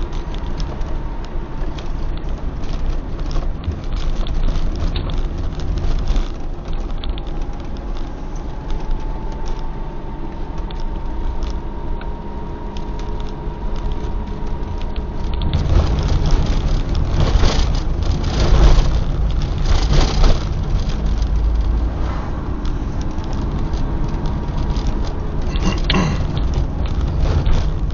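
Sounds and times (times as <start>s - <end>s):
car knocks and jolts: 0.0s - 9.6s, 12.8s - 27.9s
car engine and tyres rumbling: 0.0s - 27.9s.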